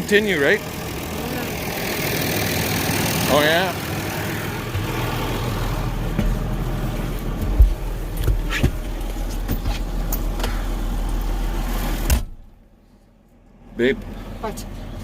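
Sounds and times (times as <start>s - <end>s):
tractor engine running: 0.0s - 15.0s
knocks and rattles: 6.0s - 10.6s.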